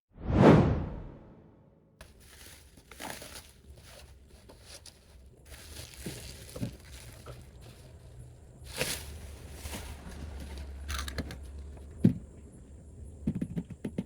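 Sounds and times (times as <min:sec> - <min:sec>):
packaging rustling and crinkling: 0:02.0 - 0:11.8.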